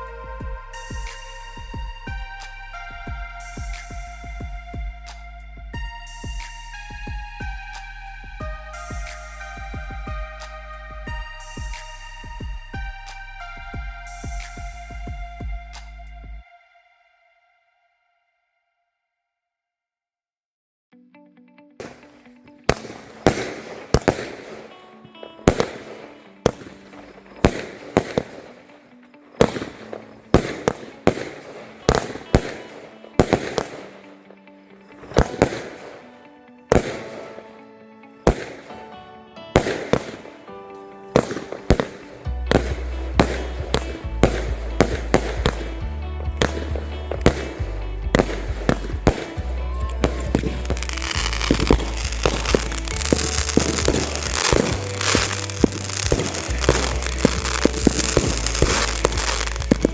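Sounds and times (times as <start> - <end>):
fireworks exploding: 0.0 - 15.9, 21.8 - 34.2, 34.9 - 59.9
fireworks crackling: 0.0 - 16.0, 21.8 - 59.9
background music with bass line: 0.0 - 16.6, 41.2 - 59.9.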